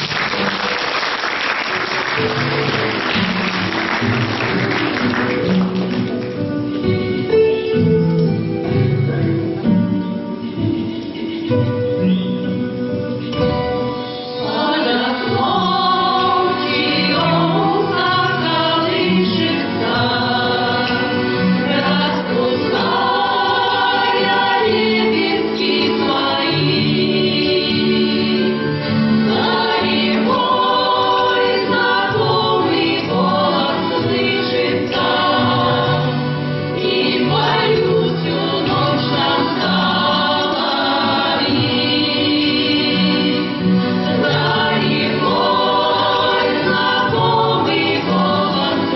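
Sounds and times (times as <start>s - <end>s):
instrumental accompaniment: 0.0s - 48.9s
choir singing folk song: 2.1s - 48.9s.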